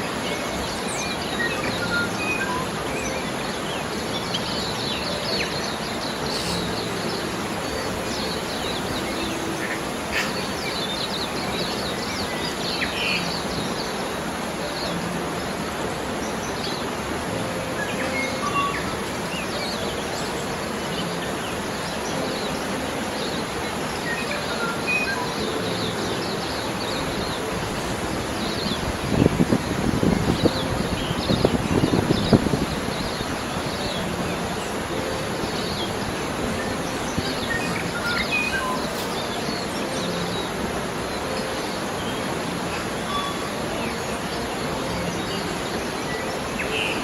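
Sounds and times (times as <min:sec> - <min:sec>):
small birds chirping: 0:00.0 - 0:47.0
stream water flowing: 0:00.0 - 0:47.0.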